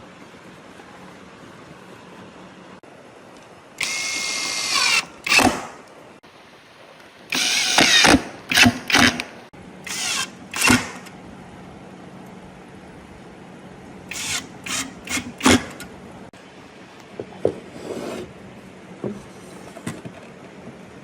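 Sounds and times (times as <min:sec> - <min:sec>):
power tool motor bursts: 0:03.8 - 0:05.8, 0:07.3 - 0:09.3, 0:09.9 - 0:11.1, 0:14.1 - 0:15.8.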